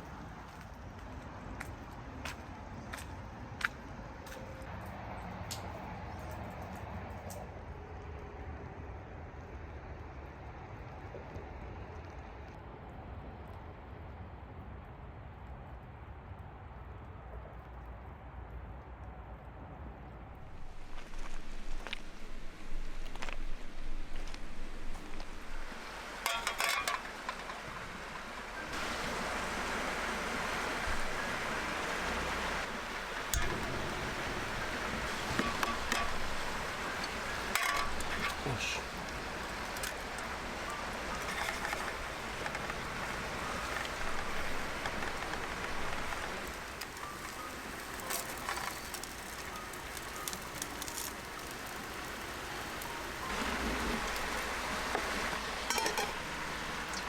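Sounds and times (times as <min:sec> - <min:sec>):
water hissing: 0:20.6 - 0:57.0.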